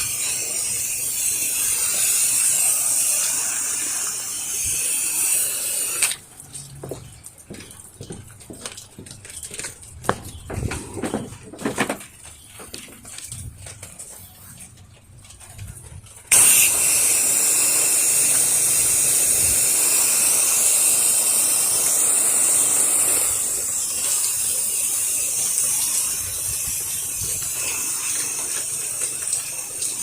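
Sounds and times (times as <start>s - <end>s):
pressure washer spraying water: 0.0s - 8.2s, 16.3s - 30.0s.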